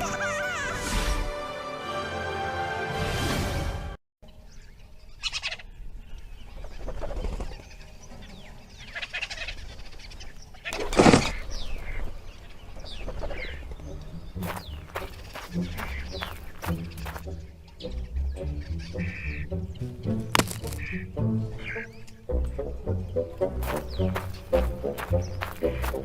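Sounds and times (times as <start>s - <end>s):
bird-like clucks and chirps: 4.5s - 26.0s.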